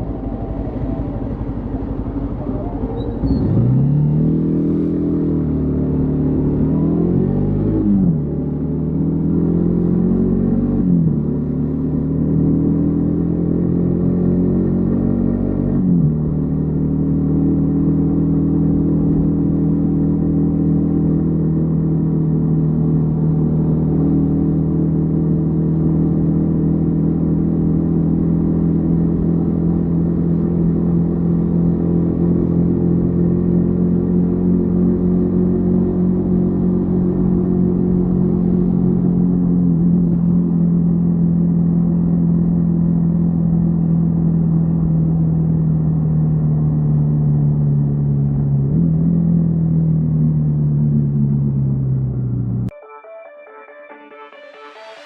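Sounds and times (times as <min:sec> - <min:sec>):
motorcycle engine running: 0:00.0 - 0:07.2.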